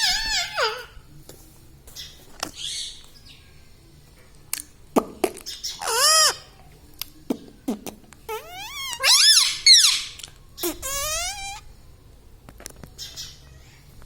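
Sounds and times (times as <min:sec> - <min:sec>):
parrot squawking: 0:00.0 - 0:01.0, 0:05.5 - 0:06.6, 0:08.3 - 0:11.6
parrot call rising and falling: 0:08.3 - 0:11.6.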